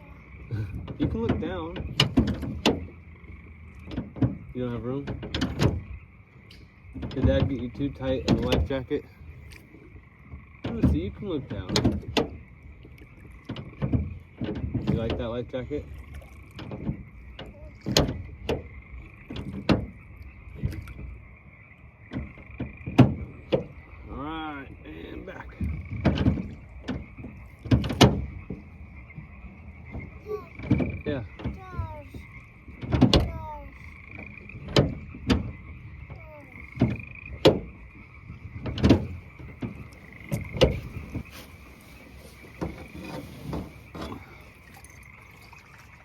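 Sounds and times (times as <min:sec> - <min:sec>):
frogs croaking chorus: 0:00.0 - 0:46.0
sharp knocks: 0:22.1 - 0:23.8, 0:25.6 - 0:41.4.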